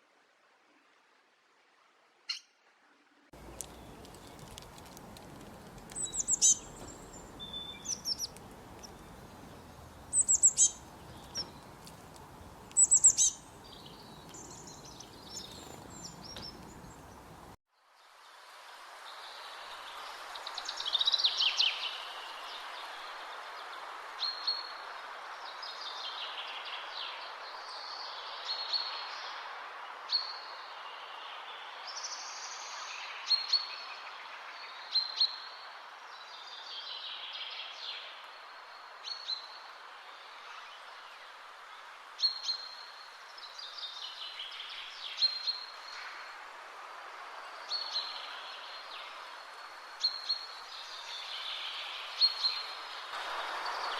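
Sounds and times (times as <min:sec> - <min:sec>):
background hiss: 0:02.9 - 0:53.9
songbirds chirping and singing: 0:03.4 - 0:17.6.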